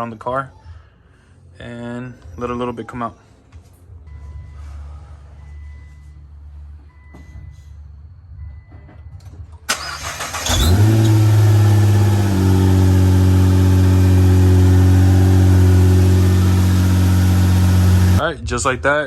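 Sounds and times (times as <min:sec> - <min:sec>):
car engine starting and idling: 0:09.6 - 0:18.2.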